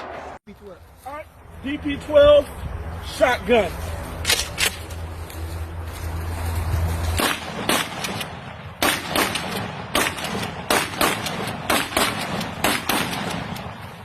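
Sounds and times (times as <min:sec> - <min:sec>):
steady low hum: 0:00.0 - 0:14.0
sharp cracks: 0:07.1 - 0:14.0.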